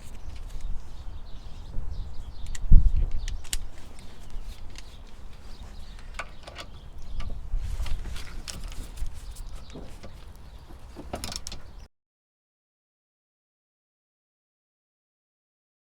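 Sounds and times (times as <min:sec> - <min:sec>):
light clicks and knocks: 0:02.4 - 0:11.9.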